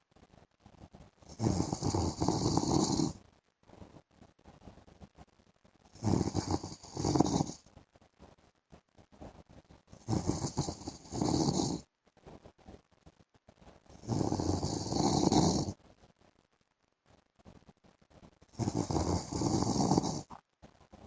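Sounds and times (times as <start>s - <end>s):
man snoring: 1.3s - 3.2s, 6.0s - 7.6s, 10.0s - 11.8s, 14.0s - 15.8s, 18.6s - 20.3s
quiet breathing: 1.3s - 3.2s, 6.0s - 7.7s, 10.0s - 11.8s, 14.0s - 15.8s, 18.6s - 20.4s.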